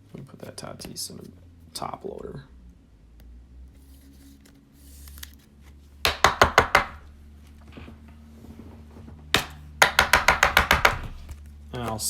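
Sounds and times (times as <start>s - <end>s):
card holder tapping on table: 9.4s - 11.3s.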